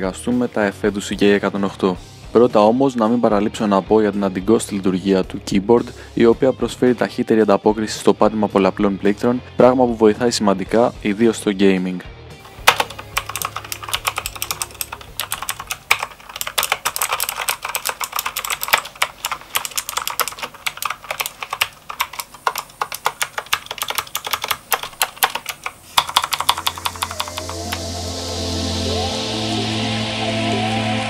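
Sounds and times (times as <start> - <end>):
mechanical keyboard typing: 12.5 - 27.8.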